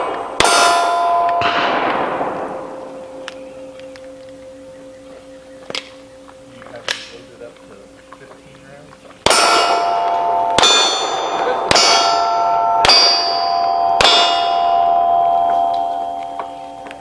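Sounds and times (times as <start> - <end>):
pistol shots: 0.0 - 4.2, 9.2 - 16.8
steel plate ringing: 0.0 - 17.0.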